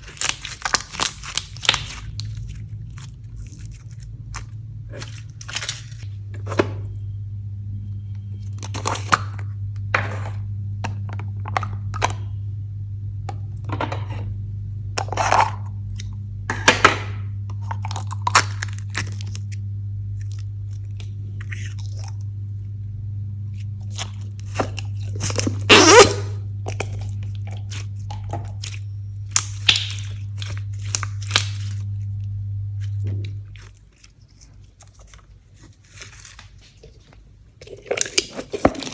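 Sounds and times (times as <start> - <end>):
slime crunching and crackling: 0.0 - 6.6, 8.4 - 9.4, 17.5 - 19.6, 20.2 - 22.2, 23.5 - 32.1, 32.8 - 38.9
steady low hum: 0.0 - 38.9.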